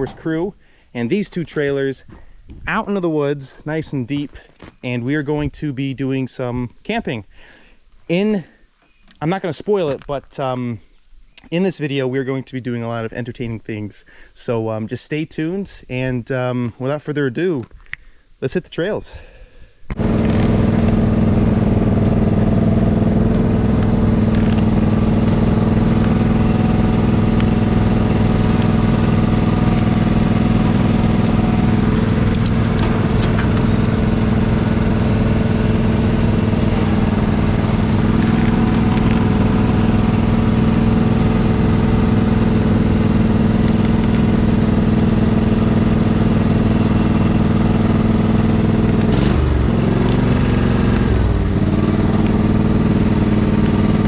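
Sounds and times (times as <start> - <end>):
riding lawn mower engine: 19.9 - 54.0.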